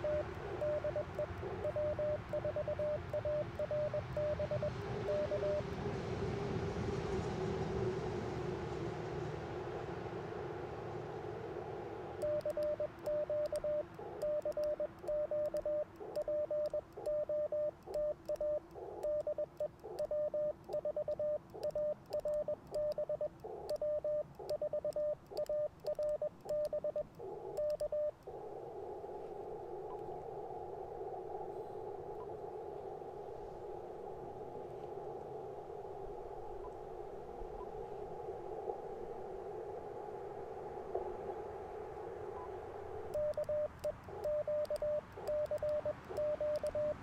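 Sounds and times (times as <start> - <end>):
morse code tone: 0.0 - 5.7, 12.2 - 28.1, 43.2 - 47.0
radio receiver hiss: 0.0 - 5.7, 11.1 - 47.0
faint paddle clicks: 12.2 - 28.0, 43.1 - 46.9.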